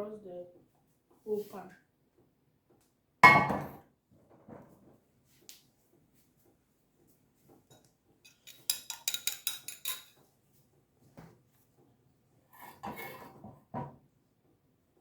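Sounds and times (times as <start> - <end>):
cookware knock: 3.2 - 3.8
metal clinking against dish: 7.7 - 10.2.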